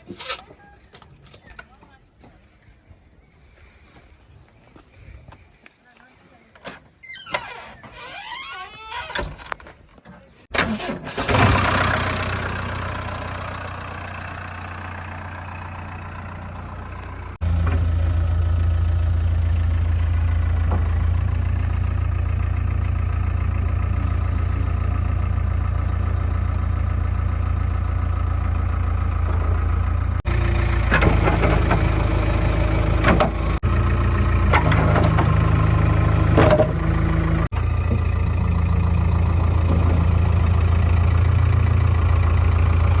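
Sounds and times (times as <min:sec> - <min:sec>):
diesel engine starting and idling: 0:10.4 - 0:43.0.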